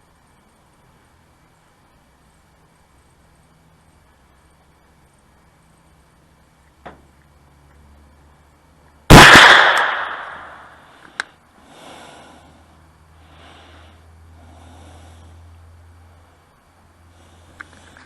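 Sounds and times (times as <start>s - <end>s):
rifle shot with echo: 9.1s - 10.8s.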